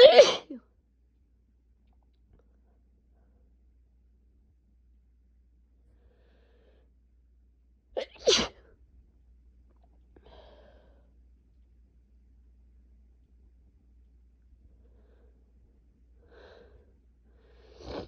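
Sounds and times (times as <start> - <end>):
person sneezing: 0.0 - 0.6, 8.0 - 8.6
faint in-breath: 5.9 - 6.9, 10.2 - 11.2, 14.7 - 15.5, 16.2 - 18.0.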